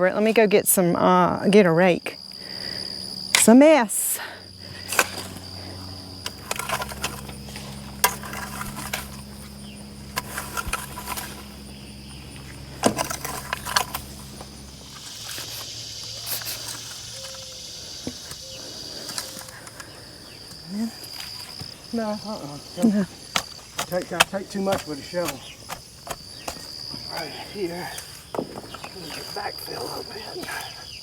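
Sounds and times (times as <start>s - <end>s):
insects chirping: 0.0s - 31.0s
high insect buzzing: 0.8s - 31.0s
diesel engine idling: 4.4s - 18.1s.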